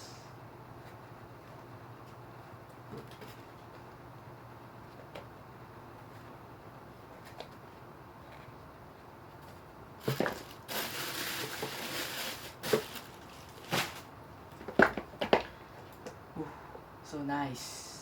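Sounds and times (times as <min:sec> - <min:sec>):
packaging rustling and crinkling: 0:10.0 - 0:15.5.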